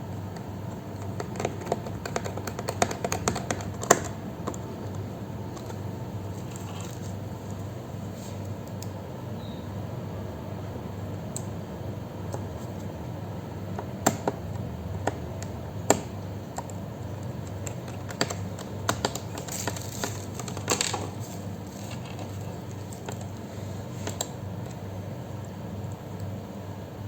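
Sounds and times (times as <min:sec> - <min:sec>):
laptop plastic clicks and taps: 0:13.8 - 0:16.8.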